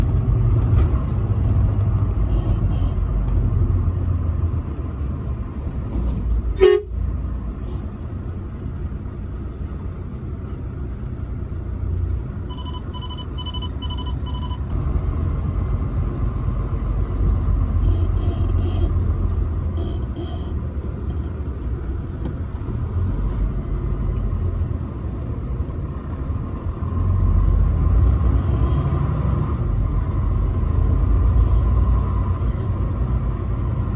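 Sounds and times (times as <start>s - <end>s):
truck engine and road rumble: 0.0s - 33.9s
horn toots: 6.6s - 7.0s, 17.8s - 19.0s, 19.7s - 20.6s.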